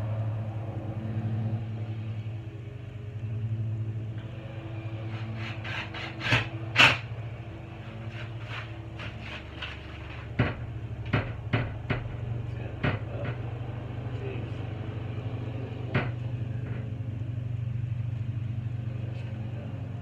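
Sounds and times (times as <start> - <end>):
steady low hum: 0.0 - 20.0
sharp knocks and clicks: 5.1 - 7.1, 7.9 - 13.5, 15.9 - 16.9.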